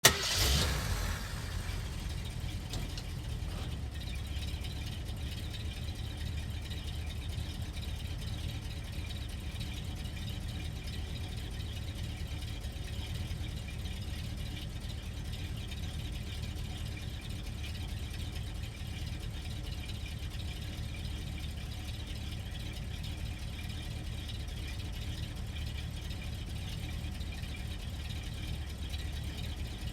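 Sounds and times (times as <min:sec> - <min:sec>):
car engine idling: 0:00.0 - 0:29.9.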